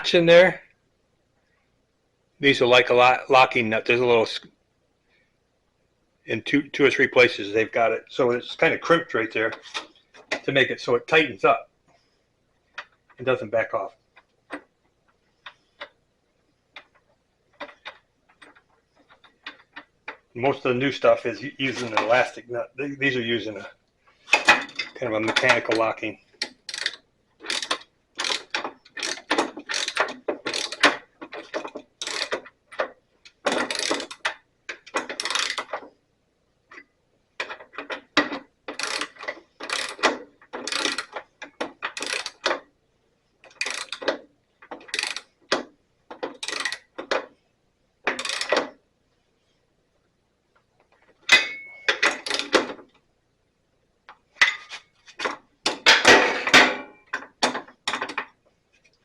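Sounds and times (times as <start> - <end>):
ratchet wrench clicking: 26.4 - 30.8, 32.0 - 32.4, 33.5 - 34.3, 35.1 - 35.7, 38.7 - 41.1, 41.9 - 42.5, 43.5 - 44.1, 44.8 - 45.3, 46.4 - 46.9, 48.2 - 48.6, 51.9 - 52.5.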